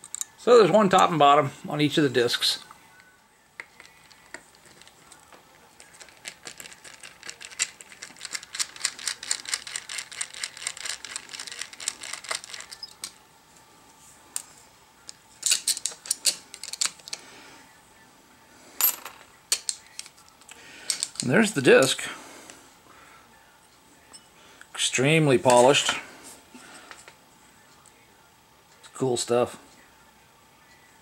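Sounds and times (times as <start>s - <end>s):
small metal parts clicking: 5.8s - 13.1s, 15.4s - 17.2s, 18.8s - 21.3s.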